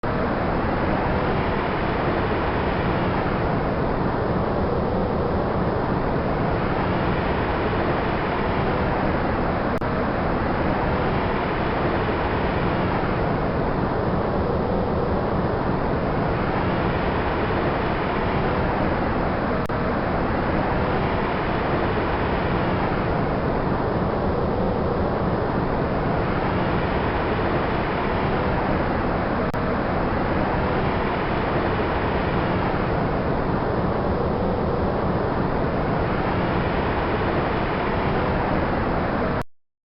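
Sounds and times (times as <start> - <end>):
wind rushing: 0.0 - 39.4.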